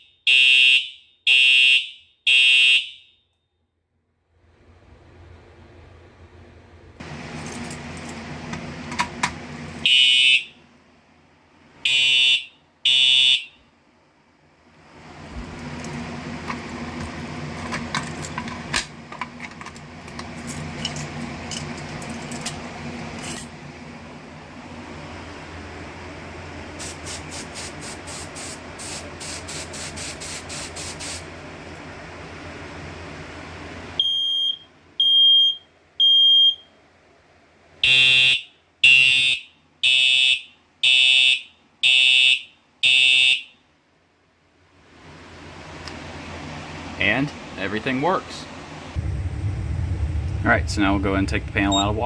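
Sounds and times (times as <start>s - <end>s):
fire alarm horn blasts: 0.0s - 3.4s, 9.8s - 10.6s, 11.8s - 13.6s, 34.0s - 36.7s, 37.8s - 43.6s
aerosol spray hissing in bursts: 26.8s - 31.3s.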